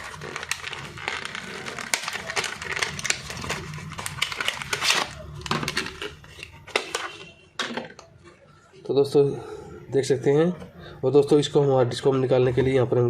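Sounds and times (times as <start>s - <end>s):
plastic packaging crinkling: 0.0s - 7.4s.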